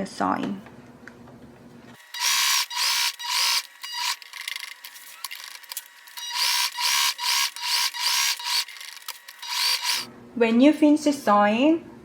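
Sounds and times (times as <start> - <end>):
sewing machine stitching paper: 2.1 - 10.1.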